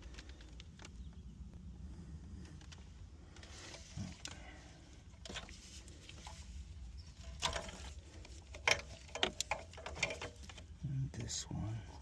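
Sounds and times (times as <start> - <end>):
handling rustle: 2.4 - 11.4.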